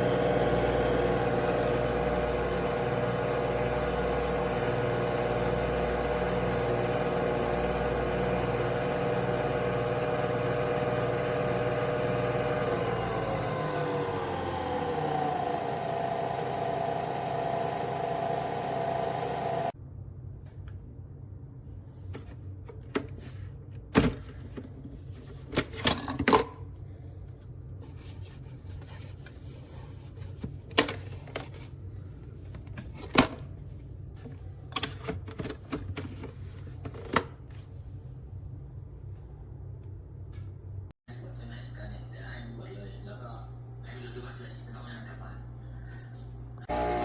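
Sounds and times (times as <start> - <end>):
coffee machine whirring: 0.0 - 19.8, 46.6 - 47.0.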